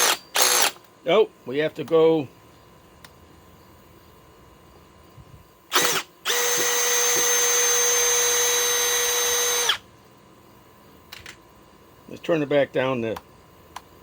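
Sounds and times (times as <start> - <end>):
cordless drill motor whine: 0.0 - 0.8, 5.7 - 9.9.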